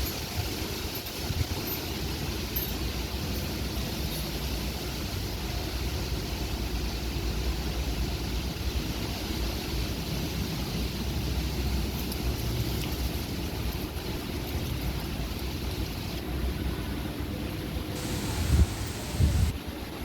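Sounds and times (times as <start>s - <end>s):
storm wind buffeting microphone: 18.0s - 20.0s.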